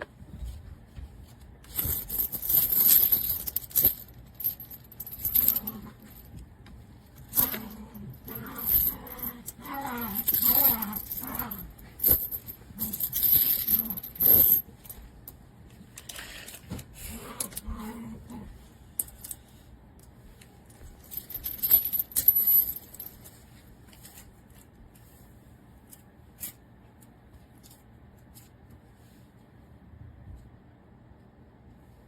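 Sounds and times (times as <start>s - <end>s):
metal chain links jangling: 1.6s - 6.4s, 7.2s - 15.0s, 21.0s - 23.3s.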